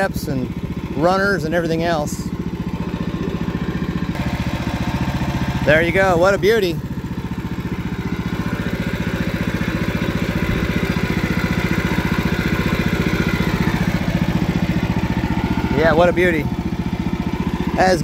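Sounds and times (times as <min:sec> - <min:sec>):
small gasoline engine running: 0:00.0 - 0:18.0.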